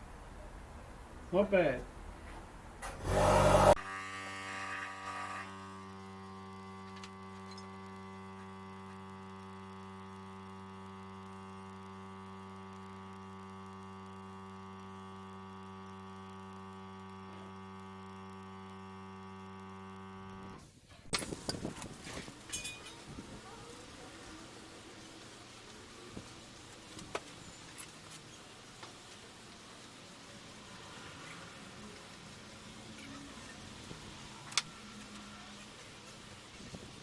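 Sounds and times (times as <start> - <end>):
electrical hum: 0.0 - 37.0
loud noisy burst: 3.0 - 4.4.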